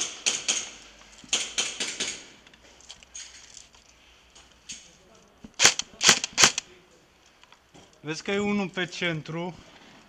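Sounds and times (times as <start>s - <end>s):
airsoft guns firing: 0.0s - 2.4s, 5.6s - 6.6s.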